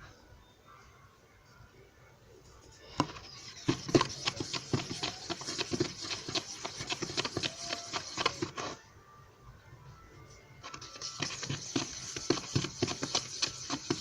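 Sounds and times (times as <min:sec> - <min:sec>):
dough sticky clicks and smacks: 0:03.7 - 0:08.7, 0:10.7 - 0:14.0.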